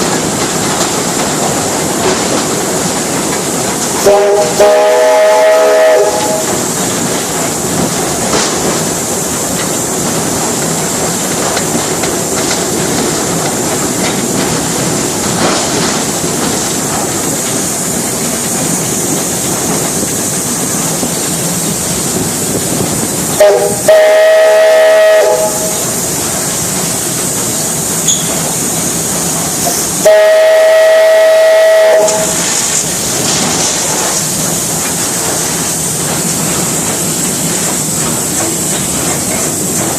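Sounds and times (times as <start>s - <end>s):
train rumbling along track: 0.0s - 39.9s
train whistle blasts: 4.0s - 6.6s, 23.4s - 25.9s, 30.0s - 32.4s.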